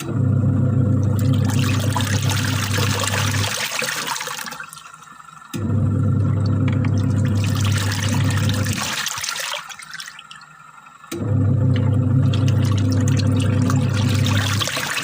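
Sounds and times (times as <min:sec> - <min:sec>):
steady low hum: 0:04.8 - 0:08.8, 0:10.3 - 0:14.8.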